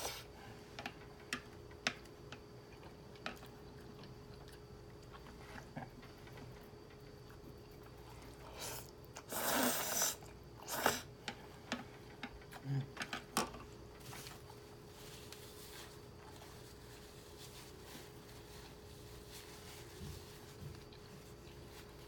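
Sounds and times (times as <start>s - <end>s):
noodle slurp: 8.2s - 11.1s.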